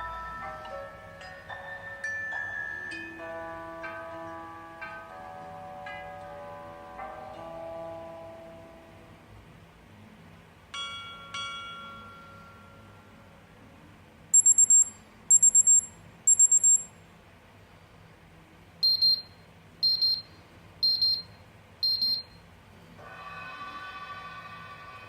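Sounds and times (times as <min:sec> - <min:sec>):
high-pitched phone beeps: 0:14.4 - 0:16.9, 0:18.8 - 0:22.4
paired lower beeps: 0:14.4 - 0:16.9, 0:18.8 - 0:22.4
sustained phone ringing tone: 0:14.4 - 0:16.9.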